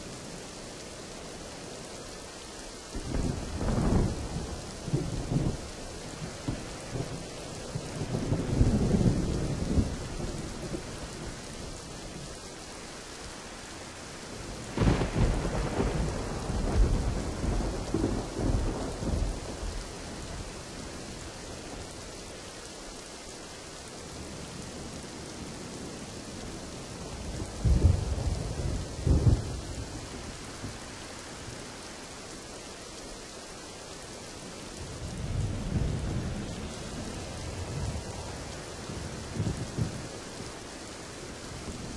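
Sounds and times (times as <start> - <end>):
heavy rain: 0.0 - 41.9
thunder rumbling: 3.0 - 11.5, 14.6 - 22.0, 27.2 - 31.6, 34.8 - 41.9.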